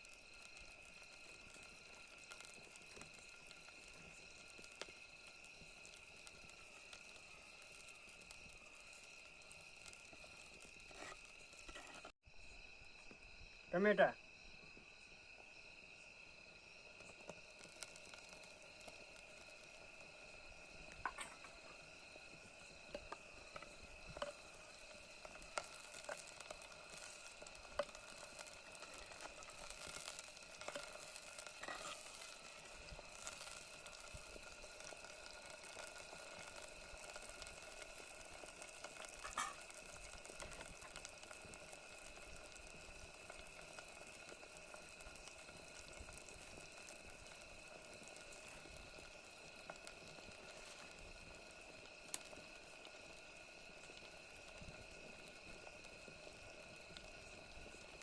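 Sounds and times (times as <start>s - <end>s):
faint steady whine: 0.0s - 58.0s
tomatoes sizzling in oil: 0.0s - 58.0s
spoon scraping pan: 10.9s - 12.1s, 31.6s - 32.2s.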